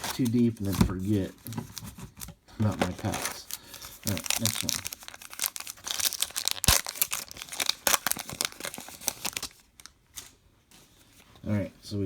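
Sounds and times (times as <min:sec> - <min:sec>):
wrapper tearing and crinkling: 0:01.4 - 0:10.4.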